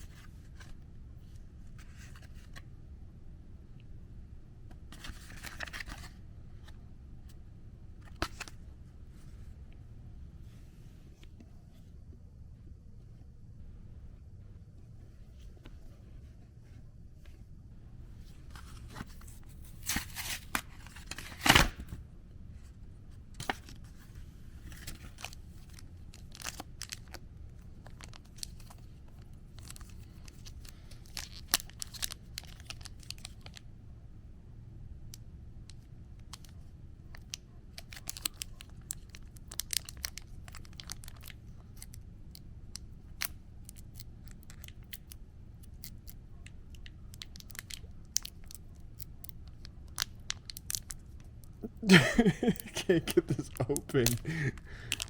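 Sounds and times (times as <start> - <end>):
wrapper crinkling: 24.7 - 27.2, 29.5 - 33.6, 37.1 - 41.9, 46.8 - 51.2, 51.8 - 55.0
foil pack tearing open: 37.8 - 41.9, 51.9 - 55.0.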